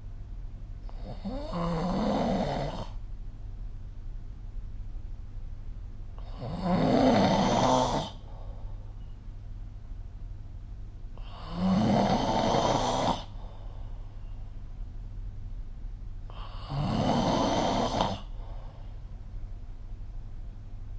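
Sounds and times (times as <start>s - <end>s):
person snoring: 0.9s - 3.0s, 6.2s - 8.3s, 11.2s - 13.5s, 16.3s - 18.8s.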